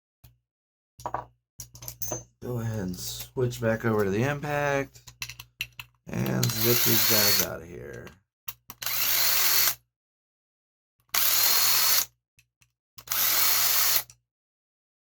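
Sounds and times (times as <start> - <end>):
impact driver running: 6.2 - 7.4.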